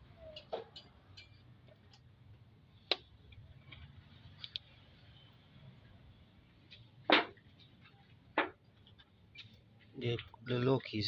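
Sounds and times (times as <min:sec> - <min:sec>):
metal engine parts clicking: 0:00.3 - 0:02.0.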